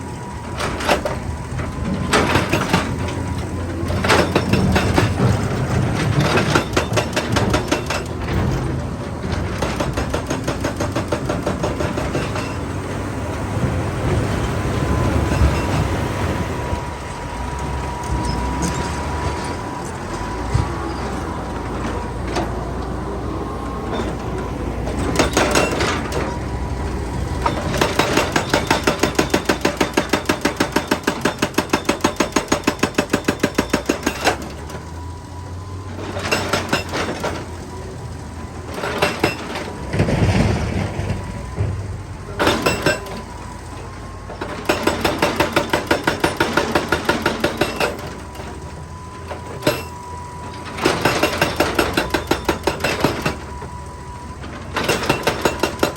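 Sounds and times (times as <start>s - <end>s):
diesel engine running: 0.0s - 55.9s
hydraulic breaker hammering rock: 0.4s - 16.0s, 24.8s - 26.4s, 27.2s - 35.1s, 35.9s - 37.6s, 38.7s - 41.2s, 42.3s - 43.4s, 44.3s - 48.7s, 49.3s - 53.6s, 54.7s - 55.9s.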